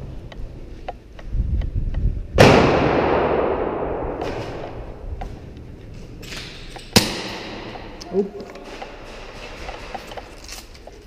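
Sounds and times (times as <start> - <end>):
loud bang with rushing tail: 2.4 - 5.0
sharp bang: 2.4 - 5.0, 6.9 - 8.0.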